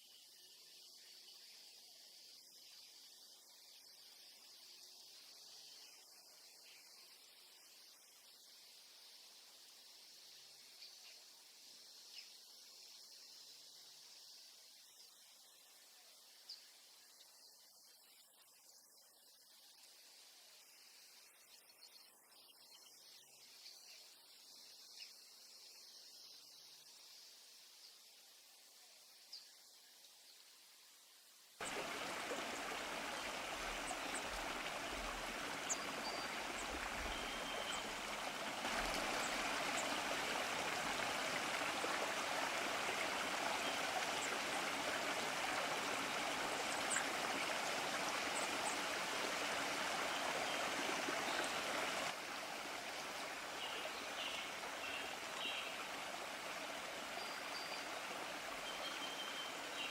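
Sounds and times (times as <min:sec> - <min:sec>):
stream of running water: 0:00.0 - 0:59.9
faint bird chirps: 0:31.6 - 0:41.8, 0:57.0 - 0:59.9.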